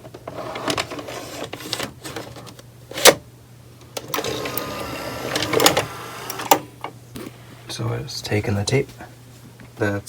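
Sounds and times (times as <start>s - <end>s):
mechanism clicks: 3.9s - 7.0s
loading motor whirring: 4.0s - 6.8s
cassette clacking into slot: 5.3s - 7.0s.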